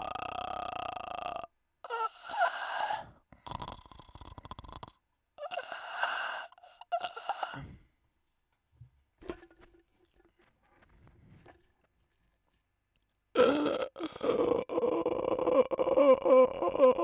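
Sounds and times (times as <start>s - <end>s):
man snoring: 0.0s - 7.8s.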